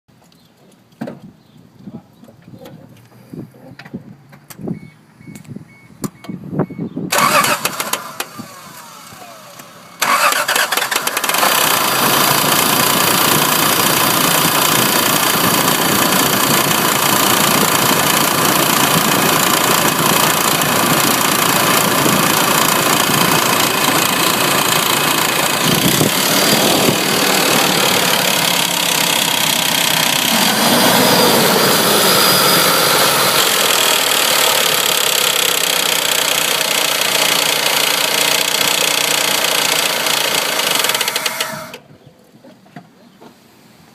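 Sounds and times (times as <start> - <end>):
short beeps: 4.7 - 6.9
car engine running: 7.1 - 41.5
engine clicking noise: 7.1 - 41.8
engine cranking on starter: 7.1 - 41.8.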